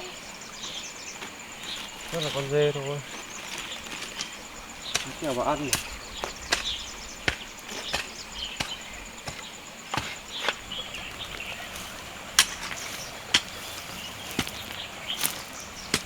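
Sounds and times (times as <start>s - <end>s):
pruning shears snapping branches: 3.4s - 9.4s, 10.0s - 16.0s.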